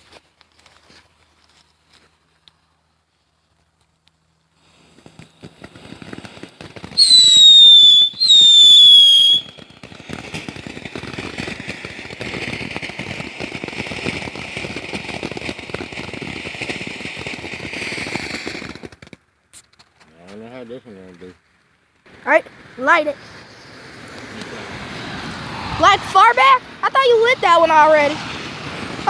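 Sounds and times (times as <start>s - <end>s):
firework sputtering crackles: 0.0s - 29.0s
firework whistles: 4.6s - 19.7s, 22.7s - 26.2s
hissing spray of sparks: 4.6s - 19.8s.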